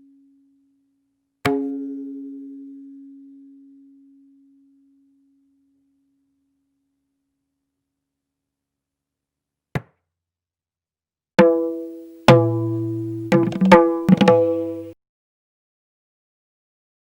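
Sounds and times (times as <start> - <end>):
hand drum strokes: 11.4 - 15.0.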